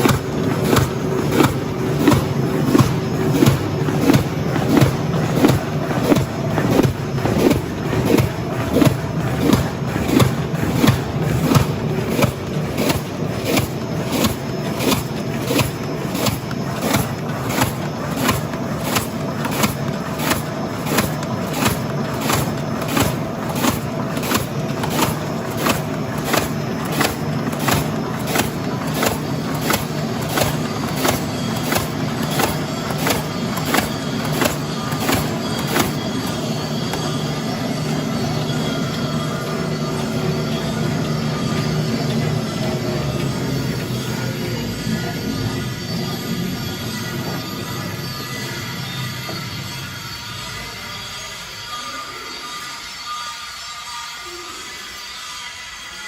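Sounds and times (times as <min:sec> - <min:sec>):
machine hum: 0:00.0 - 0:50.8.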